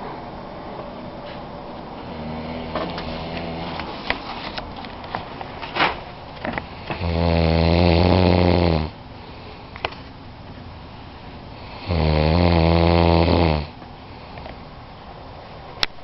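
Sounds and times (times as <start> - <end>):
man snoring: 2.0 - 3.8, 6.9 - 9.0, 11.6 - 13.8.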